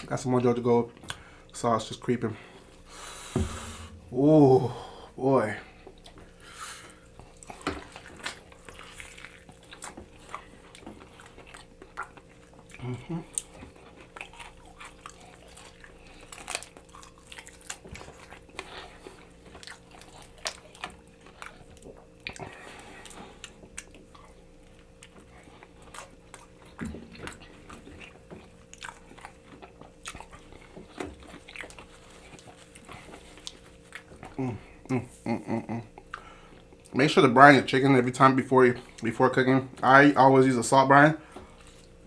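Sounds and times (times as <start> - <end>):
wet chewing: 5.9 - 35.0.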